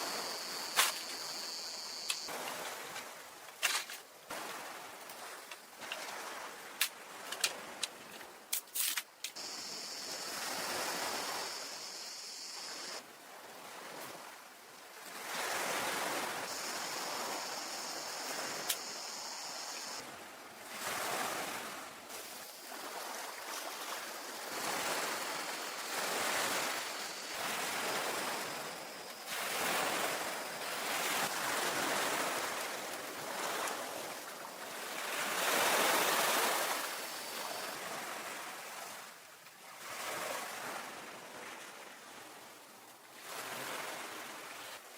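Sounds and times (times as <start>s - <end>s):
ocean waves washing onto beach: 9.3s - 44.9s.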